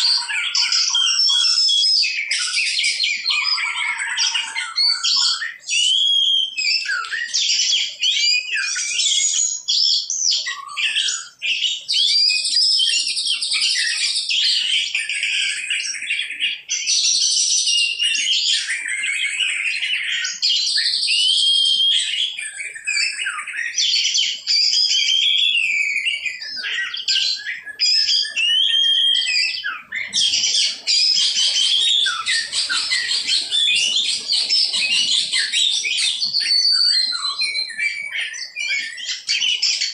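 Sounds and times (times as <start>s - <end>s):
songbirds chirping and singing: 0.0s - 39.9s.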